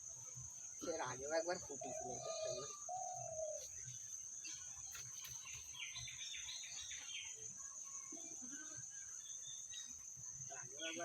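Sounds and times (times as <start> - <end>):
bird chirping: 0.0 - 8.1.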